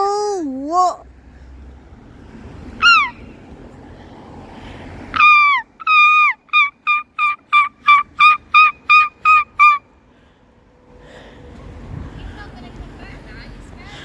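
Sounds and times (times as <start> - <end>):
gull calling: 2.8 - 3.3, 5.1 - 9.8.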